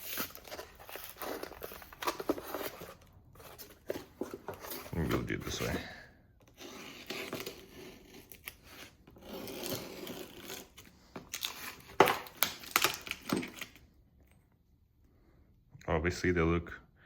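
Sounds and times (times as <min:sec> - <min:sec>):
packaging rustling and tearing: 0:00.0 - 0:05.8, 0:06.4 - 0:13.8.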